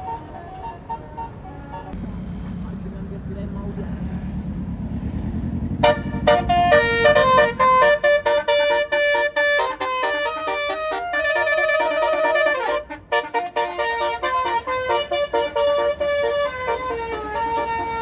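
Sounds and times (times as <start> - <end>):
multi-tone bus horn melody: 0.0 - 2.1, 5.8 - 18.0
engine rumble: 0.0 - 18.0.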